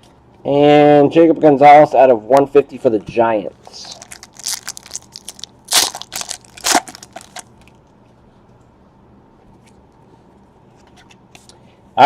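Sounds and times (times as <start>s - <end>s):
wrapper and cards rustling: 3.6s - 7.6s.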